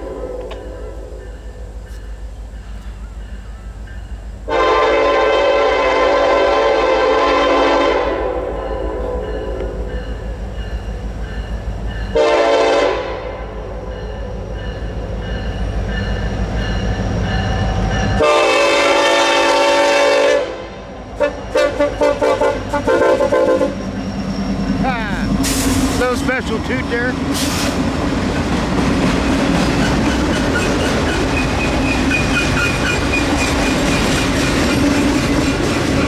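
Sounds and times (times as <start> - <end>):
passing train rumble: 0.0 - 36.0
locomotive air horn blasts: 4.5 - 9.8, 12.1 - 13.8, 18.2 - 23.8.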